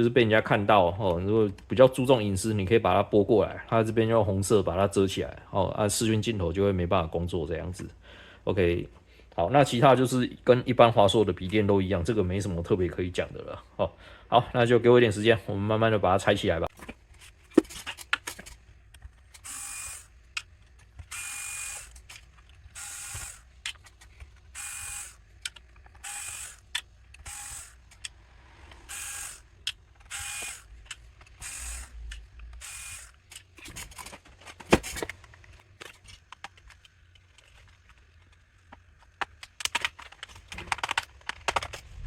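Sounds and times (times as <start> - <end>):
electric screwdriver whirring: 19.4 - 20.1, 21.0 - 23.6, 24.5 - 25.3, 25.9 - 28.2, 28.8 - 33.4
plastic clicks: 20.3 - 24.6, 25.2 - 28.9, 29.5 - 41.9.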